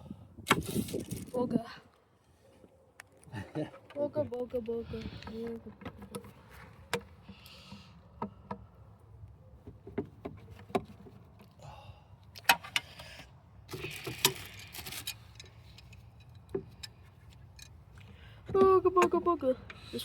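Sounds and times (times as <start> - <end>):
metal and plastic parts clicking: 13.7 - 17.8.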